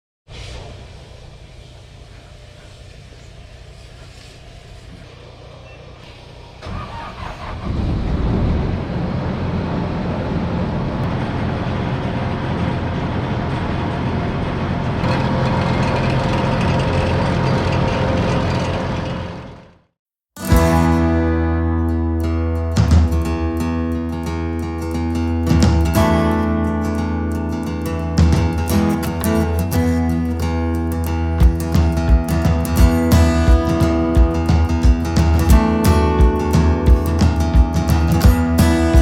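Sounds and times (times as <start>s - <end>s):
combine harvester engine: 1.4s - 19.9s.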